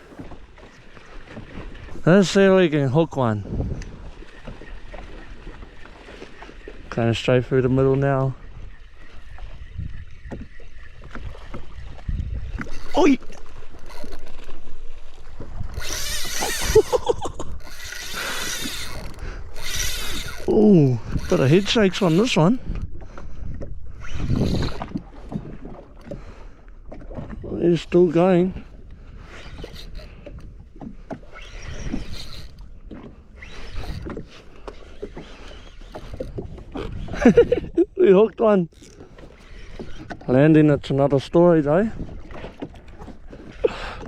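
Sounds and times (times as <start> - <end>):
water splashing against hull: 0.0 - 44.0
fishing reel whirring: 12.4 - 14.6, 15.6 - 22.5, 23.9 - 24.9, 29.2 - 30.5, 31.2 - 32.7, 33.3 - 37.6, 38.7 - 40.2.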